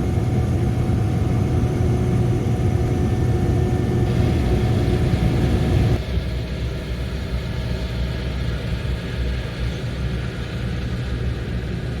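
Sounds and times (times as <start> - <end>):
harvester engine drone: 0.0 - 7.2.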